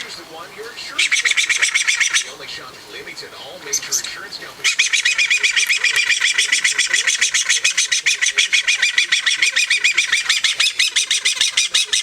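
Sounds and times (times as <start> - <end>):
parrot shrill chirps: 4.6 - 12.0.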